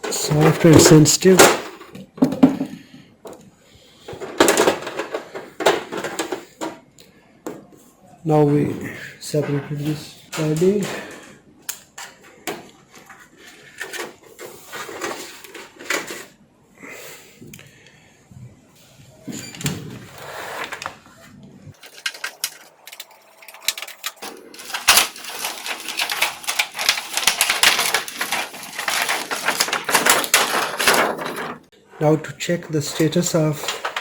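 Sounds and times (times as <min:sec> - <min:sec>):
plastic crinkling rustle: 0:21.7 - 0:31.7.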